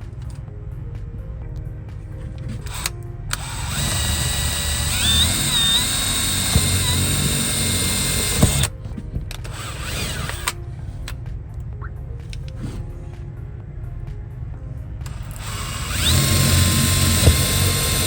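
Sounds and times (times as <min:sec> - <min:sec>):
power drill boring into wall: 0:02.6 - 0:08.7, 0:09.5 - 0:10.6, 0:15.1 - 0:18.0.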